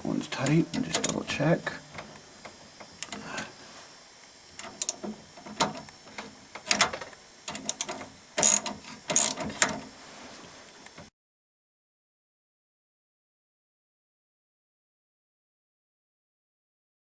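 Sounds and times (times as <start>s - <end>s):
socket ratchet clicking: 4.6s - 6.0s, 7.5s - 9.7s.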